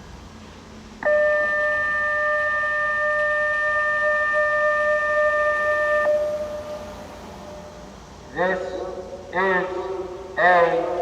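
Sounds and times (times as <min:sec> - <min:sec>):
electronic warning siren steady tone: 0:01.0 - 0:08.0.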